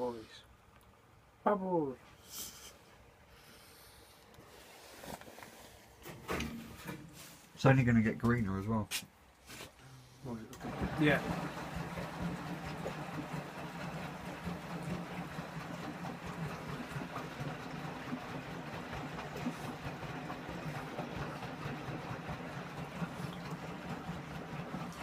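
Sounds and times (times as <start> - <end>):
washing machine motor hum: 10.5 - 25.0.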